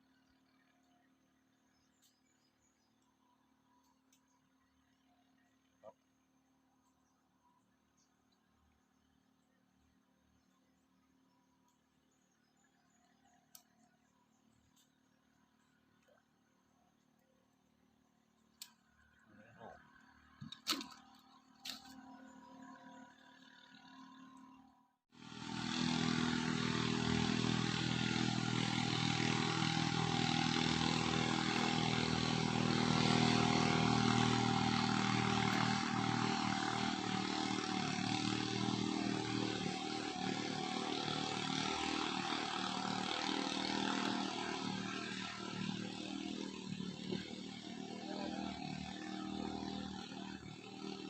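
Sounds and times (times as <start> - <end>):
boat motor running: 25.2 - 51.0.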